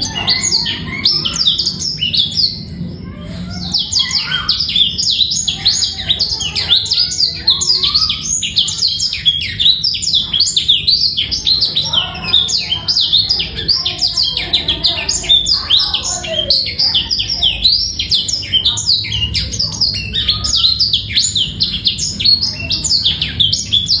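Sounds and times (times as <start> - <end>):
canary twittering song: 0.0 - 24.0.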